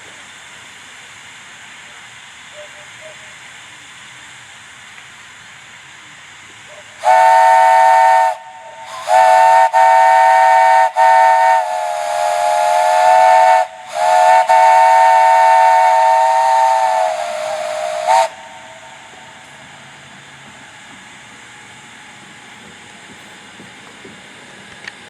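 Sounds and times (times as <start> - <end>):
steam hissing: 0.0 - 25.0
three-chime steam whistle: 6.7 - 19.2.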